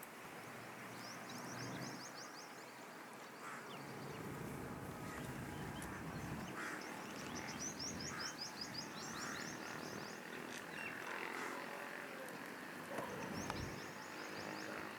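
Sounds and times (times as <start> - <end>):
birds chirping: 0.0 - 14.9
steady background hiss: 0.0 - 14.9
lower bird calls: 0.8 - 14.9.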